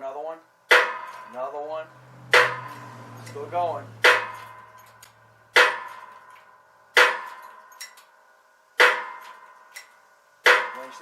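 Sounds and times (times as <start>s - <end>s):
ringing metal-on-metal strikes: 0.7s - 8.2s, 8.8s - 11.0s.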